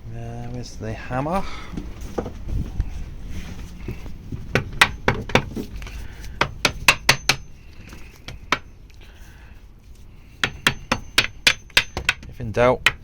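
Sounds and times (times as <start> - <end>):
hammer striking metal: 4.6 - 5.4, 6.4 - 7.6, 10.4 - 13.0.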